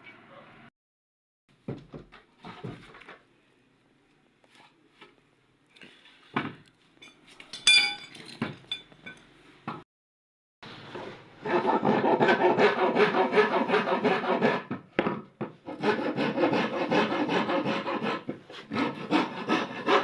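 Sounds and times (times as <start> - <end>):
ringing metal clink: 7.0 - 9.2
tools knocking and clinking: 7.0 - 9.8.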